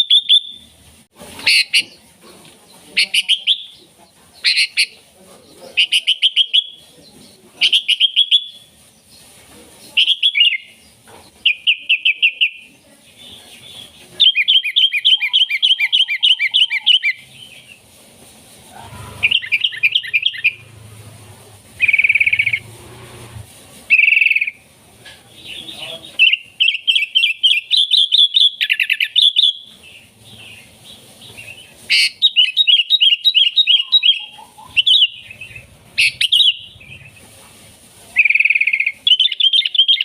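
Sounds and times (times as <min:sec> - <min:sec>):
bird chattering song: 0:02.8 - 0:09.3, 0:09.9 - 0:17.9, 0:18.9 - 0:20.7, 0:21.8 - 0:22.7, 0:23.9 - 0:24.6, 0:25.3 - 0:37.2, 0:38.2 - 0:40.0.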